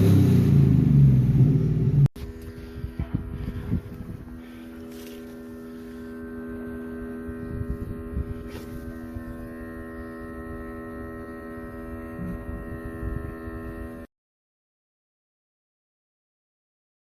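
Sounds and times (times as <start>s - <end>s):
low rumble: 0.0s - 14.1s
steady hum of held tones: 1.8s - 14.1s.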